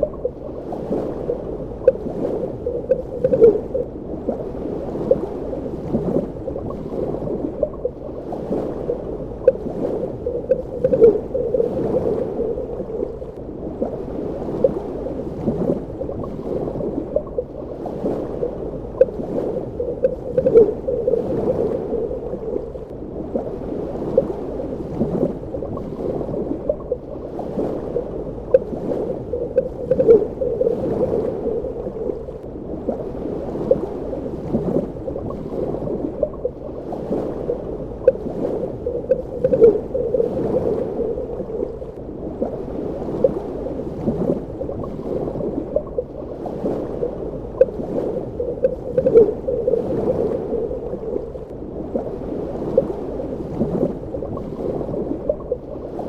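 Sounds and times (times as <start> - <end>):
bubbling gurgles: 0.0 - 4.4, 5.1 - 33.1, 33.7 - 55.7
muffled underwater water wash: 0.0 - 56.0.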